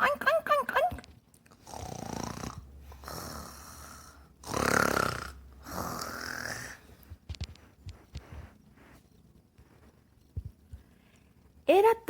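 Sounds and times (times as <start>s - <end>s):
long snores with whistle: 1.6s - 6.8s.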